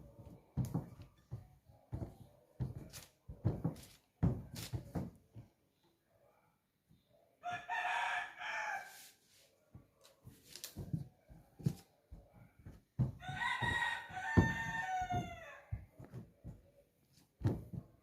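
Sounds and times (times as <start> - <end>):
rooster crowing: 7.4 - 9.0, 13.2 - 15.8.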